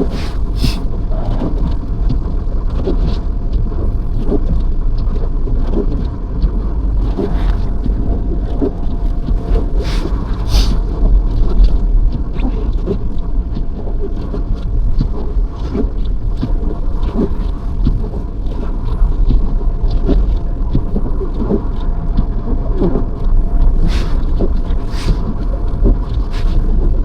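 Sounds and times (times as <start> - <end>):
soft crunches: 0.0 - 0.9, 9.5 - 10.8, 23.8 - 25.4, 26.3 - 26.7
hissing wind gusts: 0.0 - 1.5, 6.9 - 11.0, 23.8 - 25.7
wind rumbling on microphone: 0.0 - 27.0.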